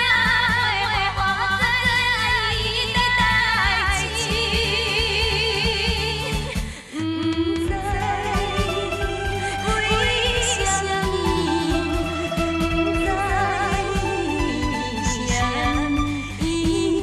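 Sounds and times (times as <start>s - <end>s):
woman singing with vibrato: 0.0s - 17.0s.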